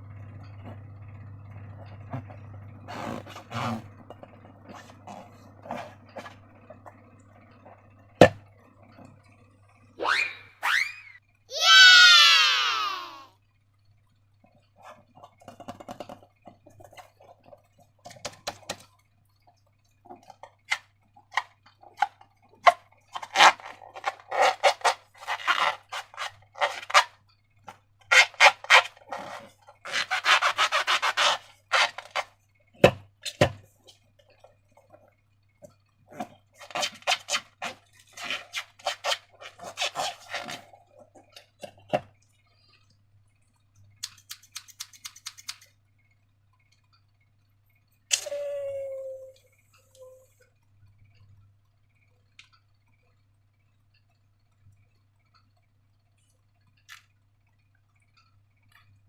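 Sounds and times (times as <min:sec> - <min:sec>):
hands rubbing balloons: 0:02.9 - 0:04.0, 0:23.2 - 0:27.1, 0:28.1 - 0:32.3, 0:36.6 - 0:40.8.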